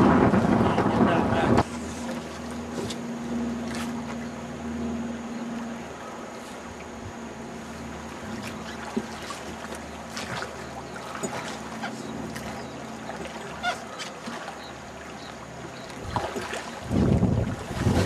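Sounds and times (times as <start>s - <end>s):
wind buffeting microphone: 0.0s - 3.0s, 16.0s - 18.0s
honking bird call: 10.6s - 15.9s.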